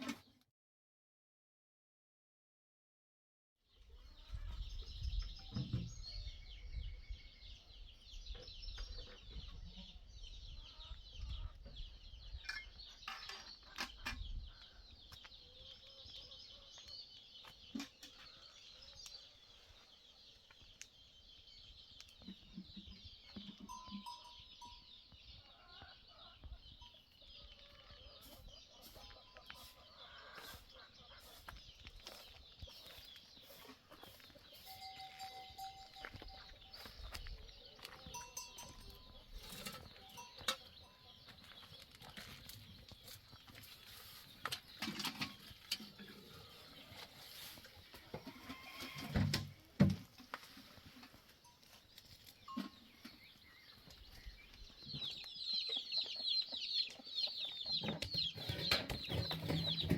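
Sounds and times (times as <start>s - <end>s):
birds chirping: 3.7s - 59.9s
chickens clucking: 8.2s - 20.7s, 25.4s - 59.9s.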